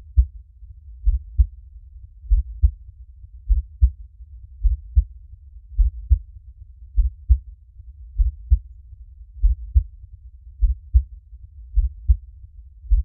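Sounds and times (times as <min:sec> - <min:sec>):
faint low rumble: 0:00.0 - 0:13.0
slow heartbeat thumps: 0:01.0 - 0:01.6, 0:02.3 - 0:02.8, 0:03.5 - 0:04.0, 0:04.6 - 0:05.1, 0:05.8 - 0:06.2, 0:07.0 - 0:07.4, 0:08.2 - 0:08.6, 0:09.4 - 0:09.9, 0:10.6 - 0:11.1, 0:11.8 - 0:12.2.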